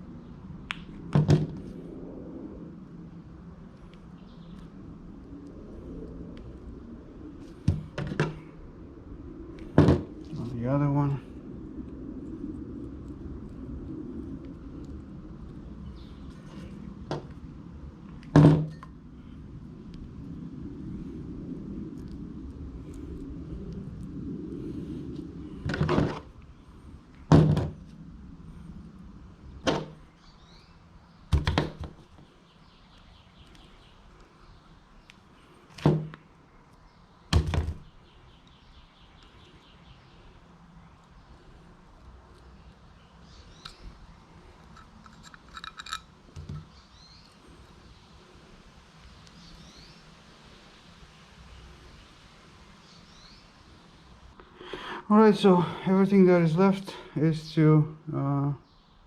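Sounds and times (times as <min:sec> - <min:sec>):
low rumble: 0:00.0 - 0:31.3
tools knocking and clicking: 0:44.8 - 0:46.6.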